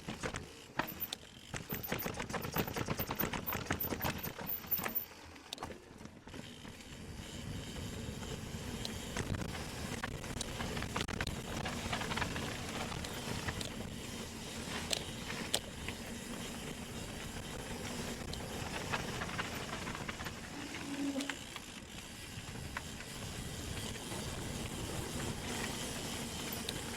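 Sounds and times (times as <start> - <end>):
bike rattling: 0.0 - 26.9
bike tyres rumbling on dirt: 6.2 - 26.9.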